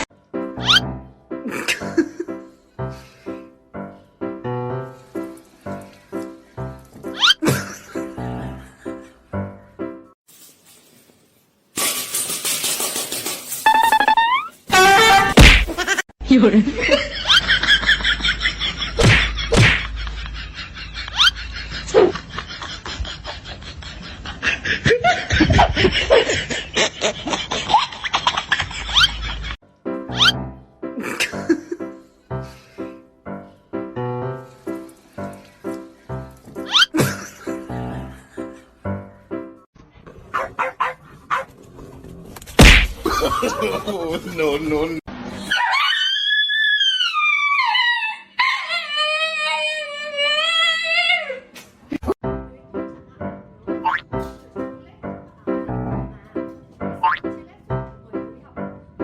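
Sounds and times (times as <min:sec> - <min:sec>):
human laughter in bursts: 0:01.4 - 0:02.4, 0:07.4 - 0:09.0, 0:15.7 - 0:29.6, 0:31.0 - 0:31.9, 0:36.9 - 0:38.6, 0:43.0 - 0:44.3
dog howling: 0:45.5 - 0:51.4.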